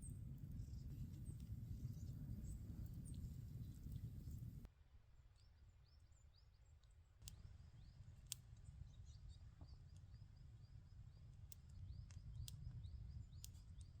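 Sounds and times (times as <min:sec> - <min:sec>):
bird chirping: 0:00.0 - 0:04.7
low steady rumble: 0:00.0 - 0:04.7.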